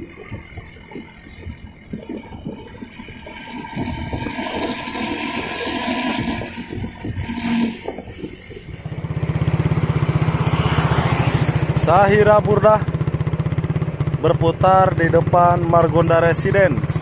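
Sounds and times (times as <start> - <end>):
rushing noise: 0.0 - 12.2
bus engine rumbling: 0.0 - 17.0.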